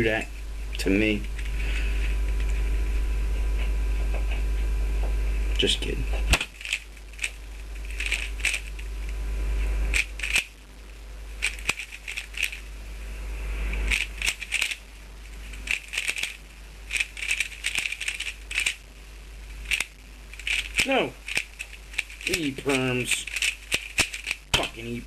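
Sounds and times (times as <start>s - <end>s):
puzzle cube clicking and clattering: 6.3s - 8.9s, 9.9s - 10.6s, 11.4s - 12.7s, 13.8s - 18.8s, 19.5s - 25.0s.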